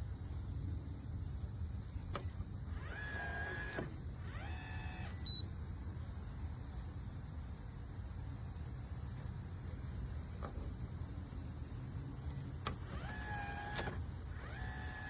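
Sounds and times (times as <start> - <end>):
small electric lock motor: 2.0 - 5.3, 12.2 - 15.0.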